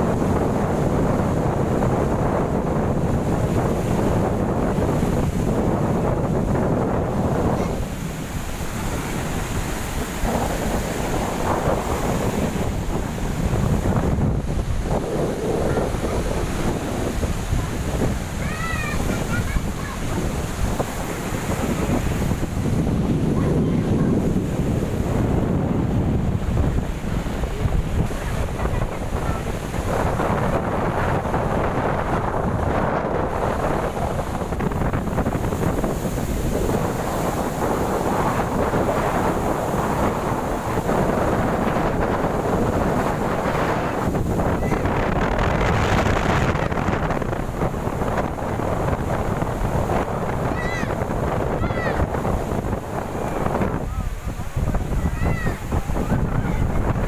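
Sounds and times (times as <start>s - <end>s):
storm waves breaking: 0.0s - 57.0s
wind buffeting microphone: 0.0s - 57.0s.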